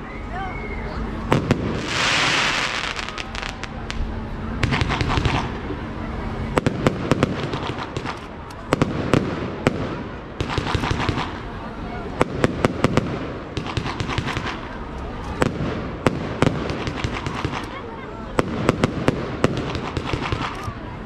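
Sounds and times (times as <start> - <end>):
firework crackling: 1.2 - 21.0
loud hissing firework burst: 1.3 - 5.7, 8.8 - 14.7, 15.4 - 17.7
firework shells bursting: 4.6 - 5.6, 6.6 - 11.5, 12.2 - 14.7, 15.3 - 17.8, 18.4 - 20.7.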